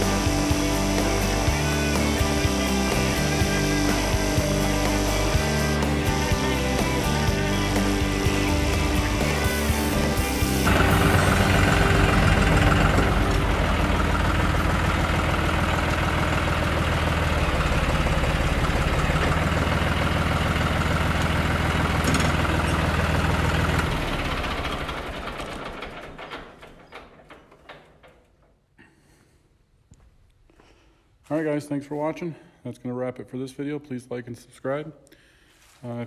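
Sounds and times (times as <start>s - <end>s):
tractor diesel engine running: 0.0s - 28.4s.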